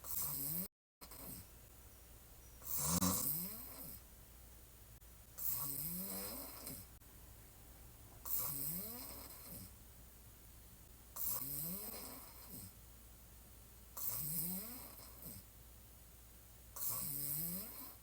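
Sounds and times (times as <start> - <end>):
woman snoring: 0.1 - 1.4, 2.6 - 4.0, 5.4 - 6.9, 8.3 - 9.7, 11.2 - 12.8, 14.0 - 15.5, 16.8 - 18.0.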